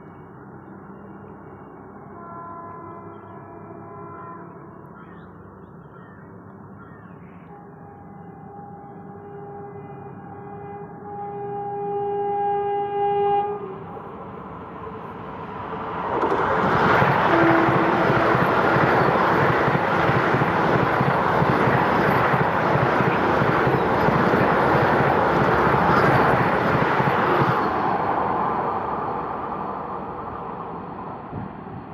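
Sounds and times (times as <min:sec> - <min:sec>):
train horn blast: 0:02.0 - 0:04.9, 0:07.5 - 0:14.1, 0:17.2 - 0:18.6
train passing rush: 0:13.4 - 0:31.9.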